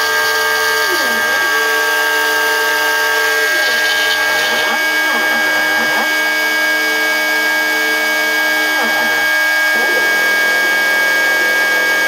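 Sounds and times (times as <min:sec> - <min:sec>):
spindle high whine: 0:00.0 - 0:12.0
stepper motors humming: 0:00.0 - 0:12.0.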